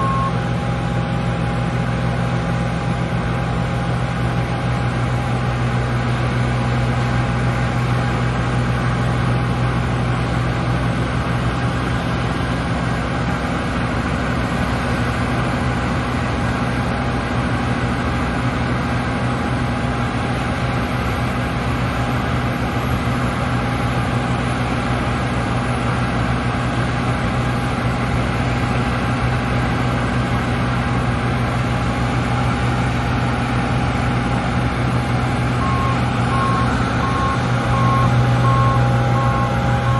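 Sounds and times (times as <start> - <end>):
diesel engine humming: 0.0 - 39.9
thin steady whine: 35.6 - 39.9.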